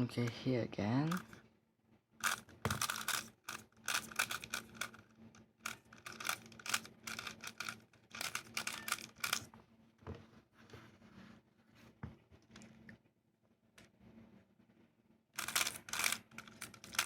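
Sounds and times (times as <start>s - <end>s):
plastic puzzle cube clicking: 1.1s - 1.4s, 2.2s - 5.0s, 5.7s - 9.5s, 15.4s - 17.0s.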